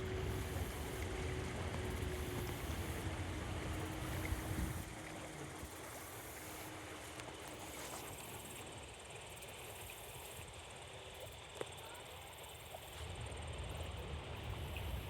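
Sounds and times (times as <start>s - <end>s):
faint steady hum: 0.0s - 10.2s.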